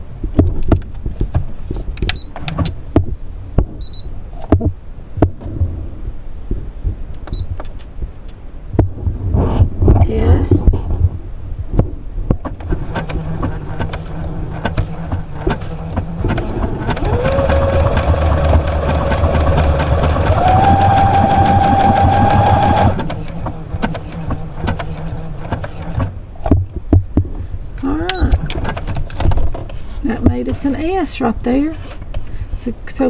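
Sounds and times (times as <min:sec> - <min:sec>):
sewing machine motor running: 0:12.6 - 0:26.1.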